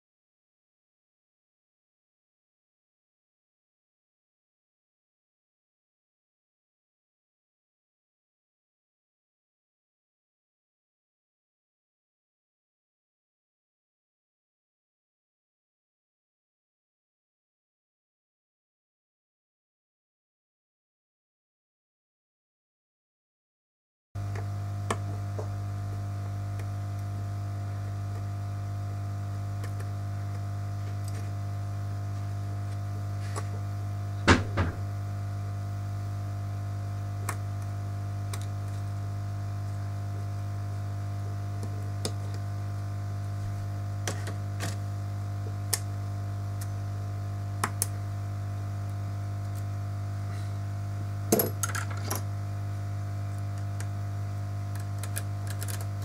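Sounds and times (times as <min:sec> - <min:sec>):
electrical hum: 0:24.2 - 0:56.0.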